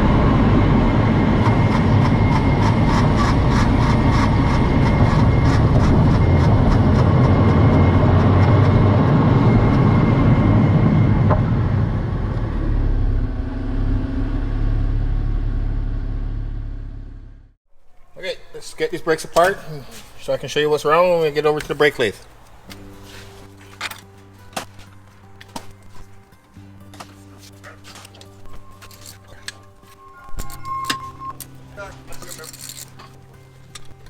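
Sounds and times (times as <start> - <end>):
brake squeal: 0.0 - 17.4, 27.1 - 34.0
road and tyre rumble: 0.0 - 17.6
car engine idling: 11.2 - 17.5.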